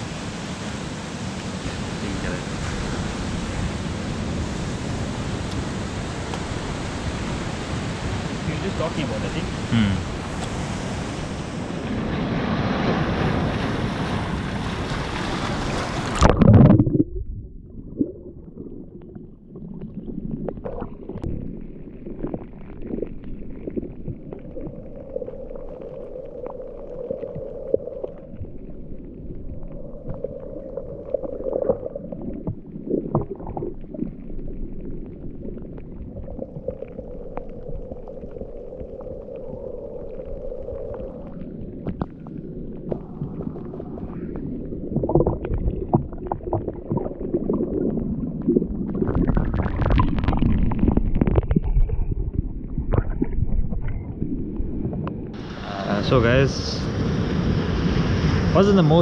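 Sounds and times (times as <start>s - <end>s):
surf: 0.0s - 17.0s, 54.8s - 59.0s.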